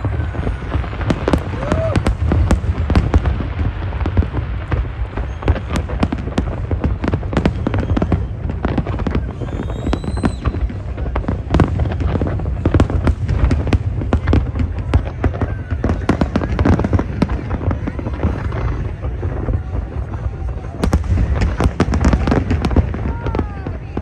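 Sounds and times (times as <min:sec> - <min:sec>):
fireworks bangs and crackles: 0:00.0 - 0:24.0
gliding firework whistle: 0:09.1 - 0:10.8.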